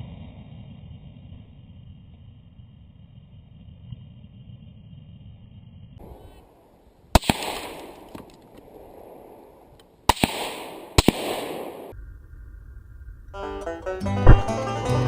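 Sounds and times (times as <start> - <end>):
rifle shots echoing: 6.0 - 12.0
music: 13.4 - 15.0.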